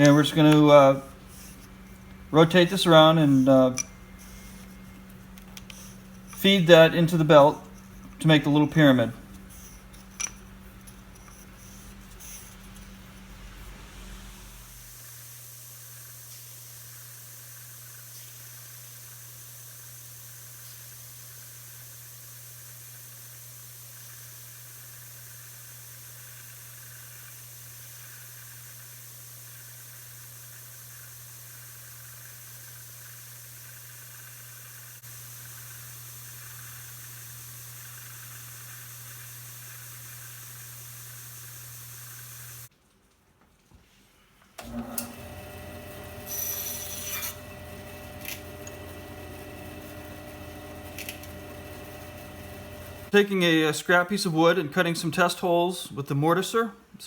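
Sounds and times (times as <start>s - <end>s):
belt sander grinding wood: 0.0s - 13.6s, 24.7s - 42.7s, 44.6s - 53.6s.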